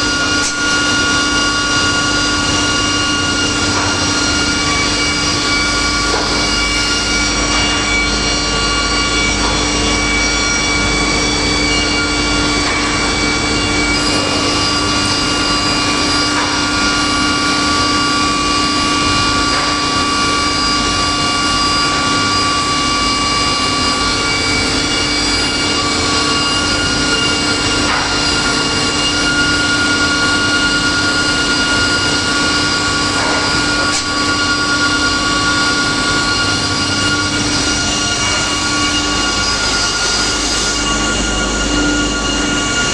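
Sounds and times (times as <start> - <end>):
rip saw machine running: 0.0 - 42.9.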